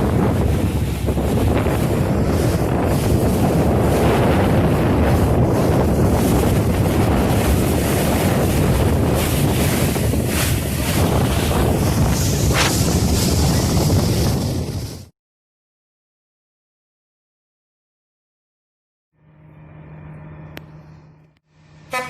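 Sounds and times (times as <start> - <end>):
boat engine running: 0.0 - 15.0, 19.2 - 22.0
water washing: 0.0 - 15.0
wind noise on microphone: 0.0 - 15.1.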